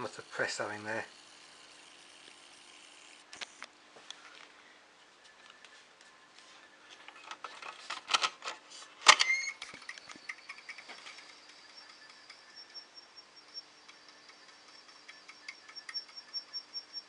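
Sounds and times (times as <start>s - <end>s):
computer hardware clicks and rattles: 7.1s - 17.0s.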